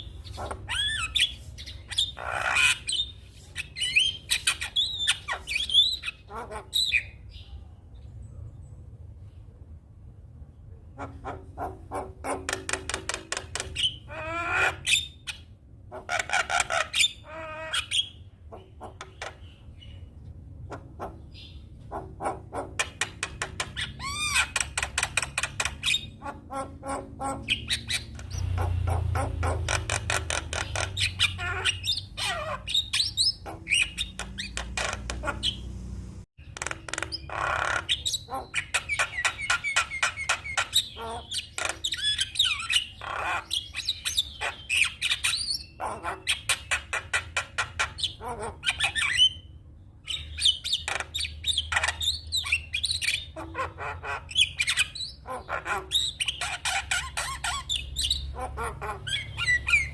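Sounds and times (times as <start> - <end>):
bird singing varied song: 0.0 - 9.5, 11.0 - 59.9.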